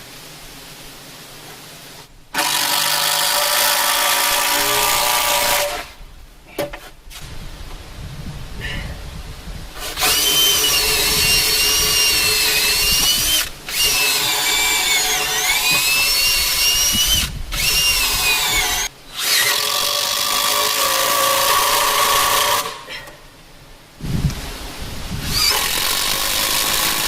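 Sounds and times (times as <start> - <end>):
electric power tool motor whining: 9.8 - 22.8, 25.3 - 27.0.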